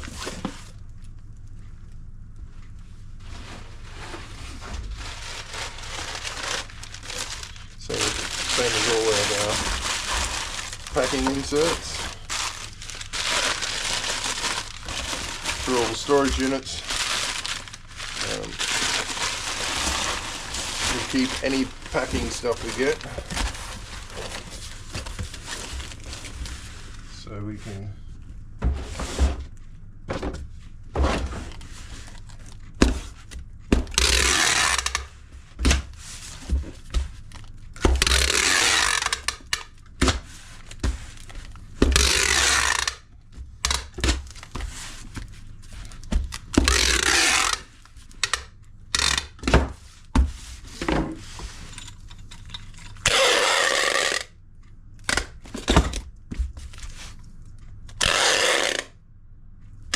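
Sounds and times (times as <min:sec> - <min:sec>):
packing tape pulled off roll: 0:04.6 - 0:24.8, 0:33.9 - 0:35.1, 0:37.3 - 0:43.0, 0:43.6 - 0:44.6, 0:45.8 - 0:49.4, 0:51.7 - 0:54.3, 0:57.9 - 0:59.0.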